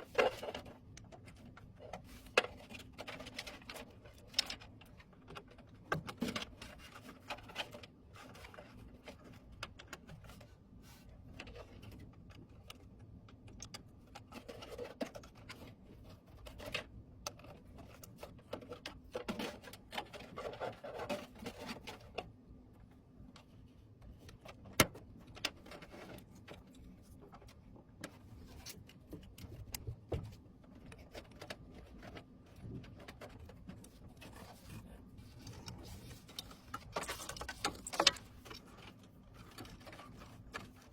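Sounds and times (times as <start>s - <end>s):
computer parts clicking and tapping: 11.4s - 22.3s, 24.2s - 40.9s.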